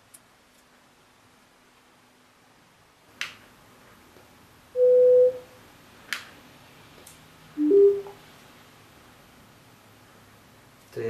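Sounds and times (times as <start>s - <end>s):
electronic beep: 4.8s - 5.4s, 7.6s - 8.2s.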